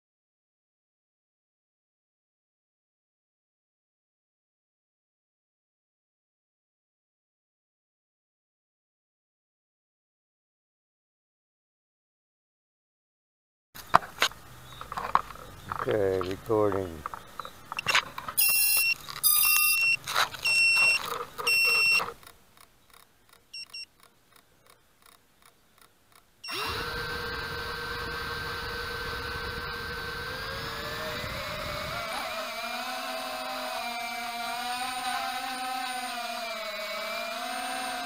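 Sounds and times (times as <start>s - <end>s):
quadcopter motors whining: 17.8s - 22.2s, 26.4s - 38.0s
short high electronic beeps: 18.4s - 22.1s, 23.6s - 23.9s.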